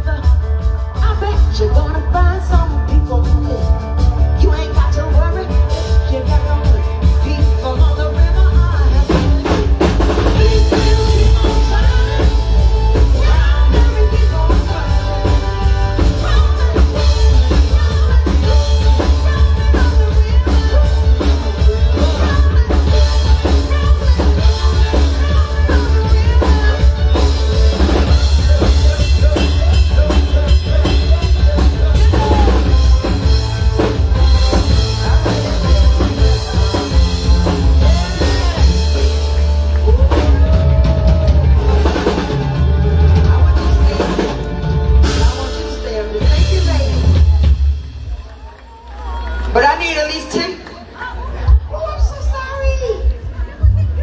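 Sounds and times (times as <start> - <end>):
person singing: 0.0 - 47.8
live band music: 0.0 - 54.0.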